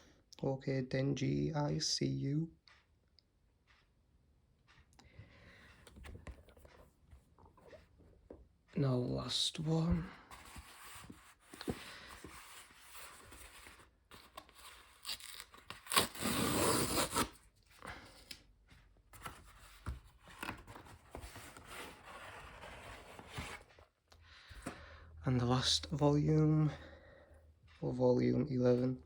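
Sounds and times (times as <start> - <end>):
packaging tearing and rustling: 14.2 - 17.4.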